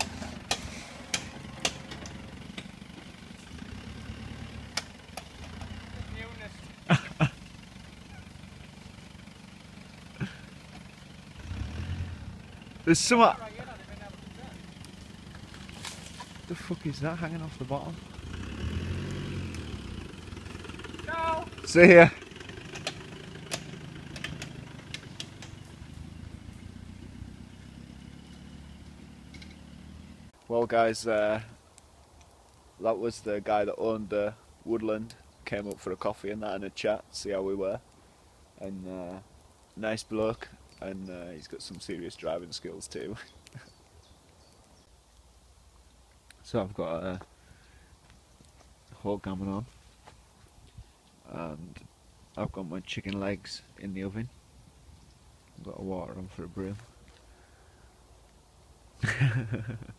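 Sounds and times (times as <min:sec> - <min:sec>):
sharp cracks: 0:00.0 - 0:02.8, 0:04.6 - 0:08.3, 0:19.0 - 0:26.6
vehicle engine at low revs: 0:00.0 - 0:30.4, 0:58.9 - 0:59.9
sharp clicks: 0:22.7 - 0:25.7.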